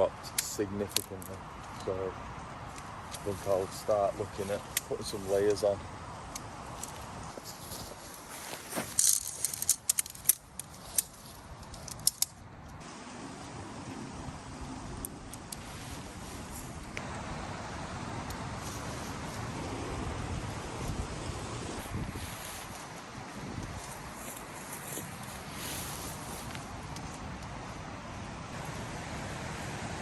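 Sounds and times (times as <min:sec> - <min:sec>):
wind hiss: 0:00.0 - 0:30.0
clothing and gear rustling: 0:02.6 - 0:12.2, 0:21.8 - 0:27.9
sharp clicks and jingles: 0:08.8 - 0:12.4.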